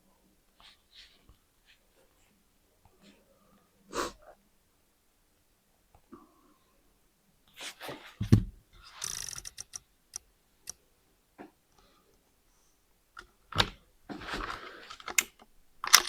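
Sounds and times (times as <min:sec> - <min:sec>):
air rifle clicks and knocks: 0:15.0 - 0:16.0.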